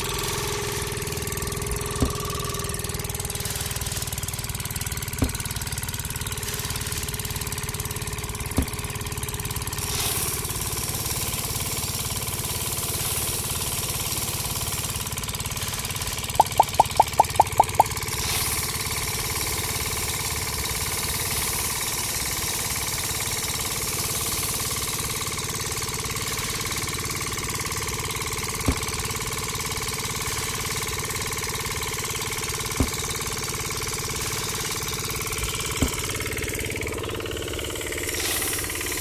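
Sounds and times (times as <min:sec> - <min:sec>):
small motor whining and rattling: 0:00.0 - 0:16.4, 0:17.8 - 0:39.0
short sharp clicks: 0:16.4 - 0:17.9.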